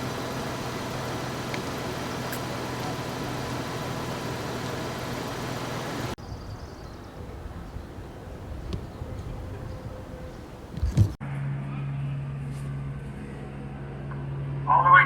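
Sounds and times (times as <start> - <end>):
motor humming: 0.0 - 6.2
low outdoor rumble: 0.0 - 15.0.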